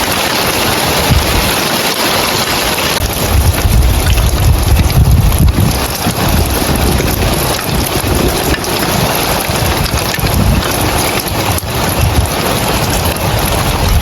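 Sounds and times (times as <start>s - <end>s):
rain on roof tiles: 0.0s - 14.0s
low rumble: 3.0s - 10.9s.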